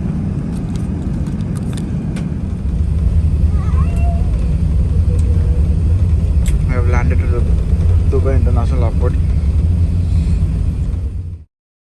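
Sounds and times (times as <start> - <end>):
airliner cabin rumble: 0.0 - 11.5.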